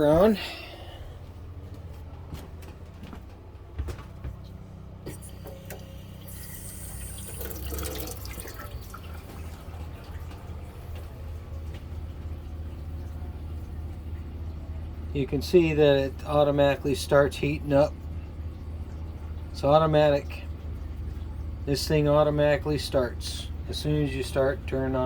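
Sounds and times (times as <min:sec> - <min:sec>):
steady low hum: 0:00.0 - 0:25.0
water running from a tap: 0:05.1 - 0:23.9.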